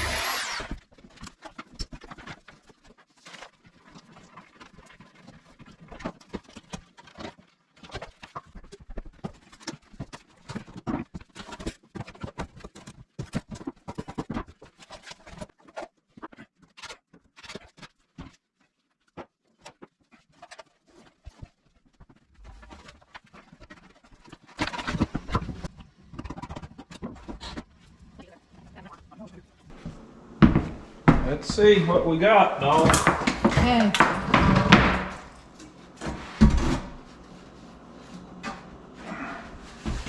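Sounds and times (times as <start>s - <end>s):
hands and tools working on wiring: 0.0s - 0.8s, 29.7s - 40.0s
knocking and scraping: 29.7s - 40.0s.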